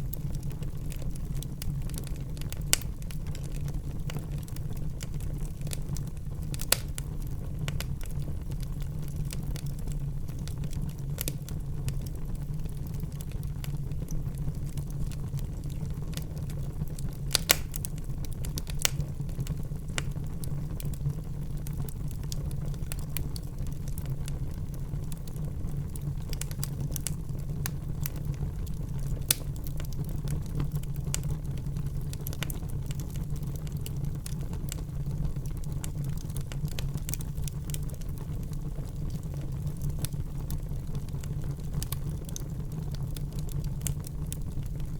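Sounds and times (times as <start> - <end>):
wood fire crackling: 0.0 - 44.9
wood snapping pops: 17.3 - 17.8.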